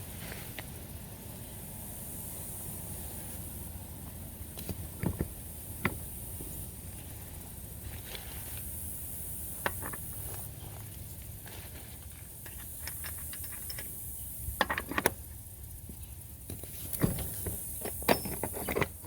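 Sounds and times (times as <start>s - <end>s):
metallic clicks and knocks: 12.5s - 14.0s, 17.0s - 19.0s.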